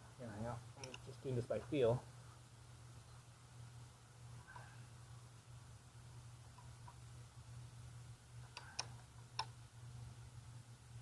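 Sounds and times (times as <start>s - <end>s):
steady low hum: 0.0s - 11.0s
faint ticks: 8.4s - 9.6s.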